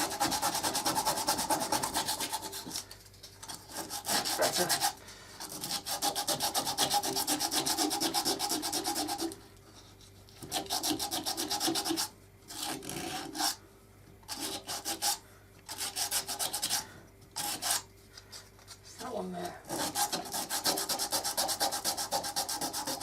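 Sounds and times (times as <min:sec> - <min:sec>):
sandpaper rubbing spinning wood: 0:00.0 - 0:02.9, 0:03.6 - 0:09.4, 0:10.4 - 0:13.6, 0:14.3 - 0:16.8, 0:19.7 - 0:23.0.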